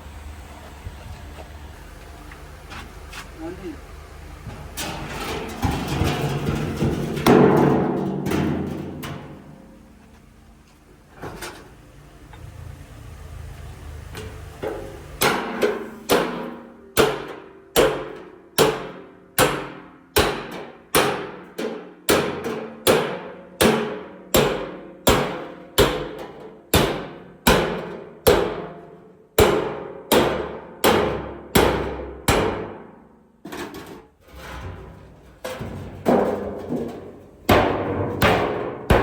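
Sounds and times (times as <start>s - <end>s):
hammer striking sheet steel: 15.2s - 26.2s, 26.8s - 28.7s, 29.4s - 32.9s, 35.6s - 39.0s.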